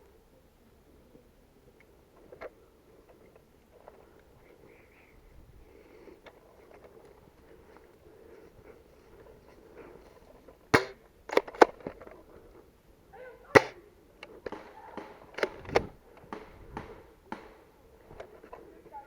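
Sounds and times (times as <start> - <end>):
airsoft gun shots: 10.7 - 11.7, 13.6 - 13.8.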